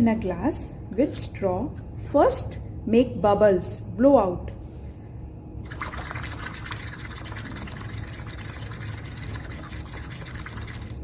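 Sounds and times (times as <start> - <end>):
bubbling through a straw in water: 5.6 - 11.0.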